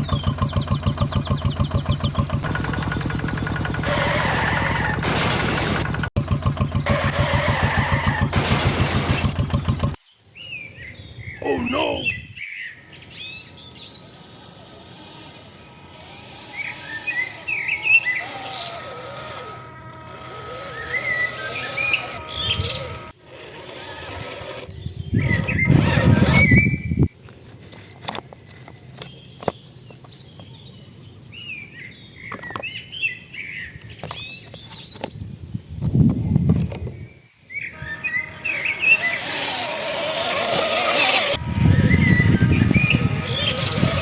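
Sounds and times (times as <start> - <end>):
birds chirping: 0.0 - 2.3, 10.0 - 23.0, 36.5 - 44.0.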